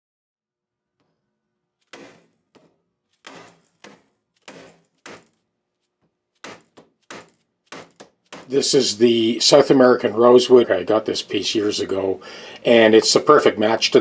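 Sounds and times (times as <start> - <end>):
hand-sanding strokes: 1.8 - 2.3, 3.2 - 5.2, 6.4 - 9.3.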